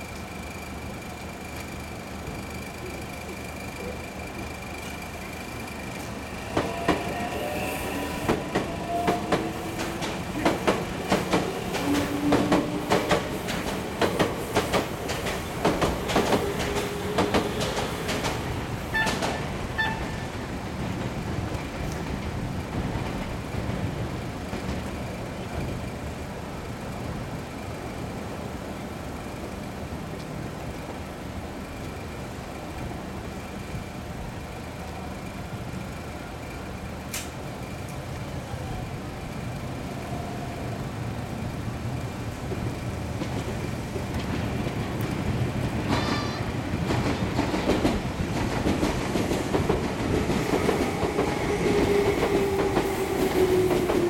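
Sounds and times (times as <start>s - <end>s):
electric train whine: 0.0s - 54.0s
train rumble: 0.0s - 54.0s
train wheels clacking over rail joints: 6.0s - 20.1s, 42.5s - 54.0s.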